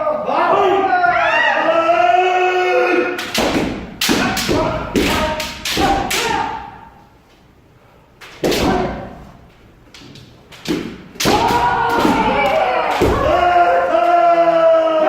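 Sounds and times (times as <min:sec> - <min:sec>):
bamboo swords striking armour: 0:03.2 - 0:06.7, 0:08.4 - 0:09.2, 0:10.6 - 0:13.5
person shouting: 0:11.3 - 0:15.0.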